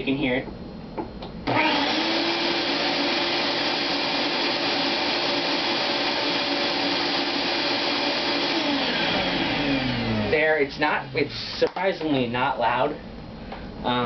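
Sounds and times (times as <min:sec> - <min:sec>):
wet dry vacuum running: 0:01.4 - 0:11.8.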